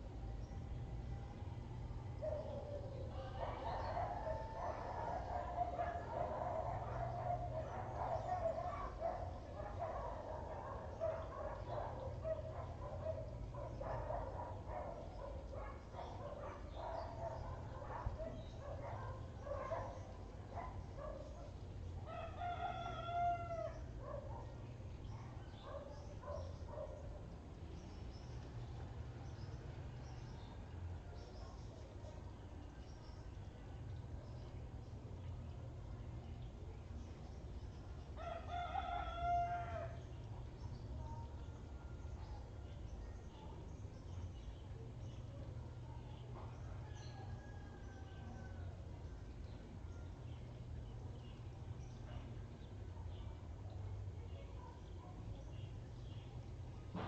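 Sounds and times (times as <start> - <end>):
birds calling: 2.2 - 28.7.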